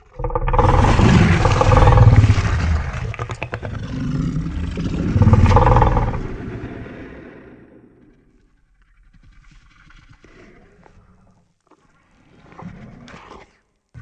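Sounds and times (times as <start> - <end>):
rattle of clicks: 0.0 - 6.4
deep creature roars: 0.0 - 7.7.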